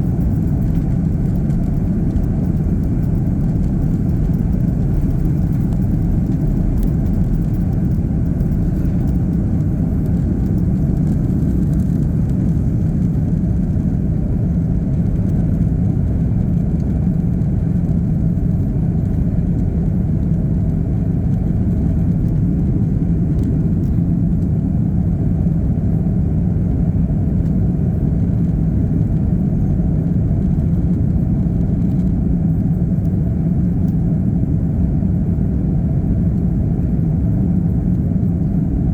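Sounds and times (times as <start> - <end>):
airplane cabin engine rumble: 0.0 - 38.9.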